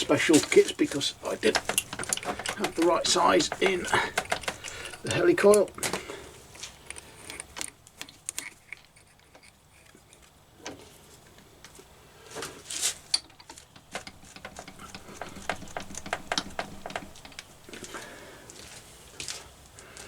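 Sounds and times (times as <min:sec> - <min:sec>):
small metal tools clicking and tapping: 0:00.0 - 0:06.0, 0:06.6 - 0:10.3, 0:13.1 - 0:17.9
short rustle: 0:12.2 - 0:20.0.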